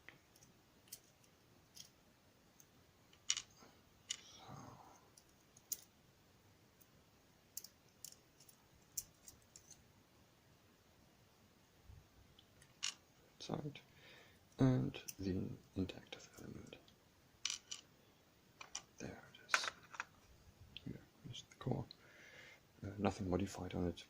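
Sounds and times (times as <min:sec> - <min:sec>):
small metal lock parts clicking: 0:07.6 - 0:09.8.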